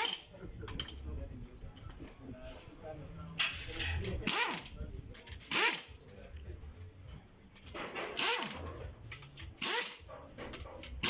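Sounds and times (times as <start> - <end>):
dog barking: 10.0 - 10.9.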